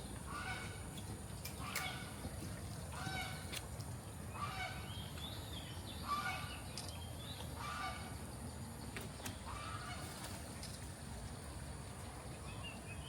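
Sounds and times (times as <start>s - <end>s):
flamingos calling: 4.3s - 4.9s.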